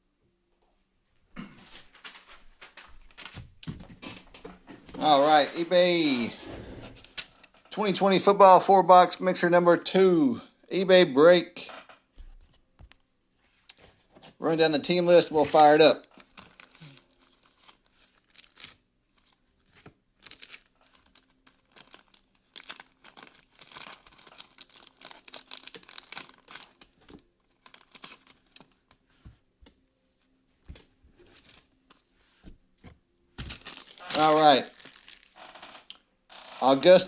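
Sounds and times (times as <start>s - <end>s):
plastic wrapping crinkling: 1.6s - 5.9s, 15.3s - 29.2s, 30.2s - 32.1s, 33.4s - 36.0s.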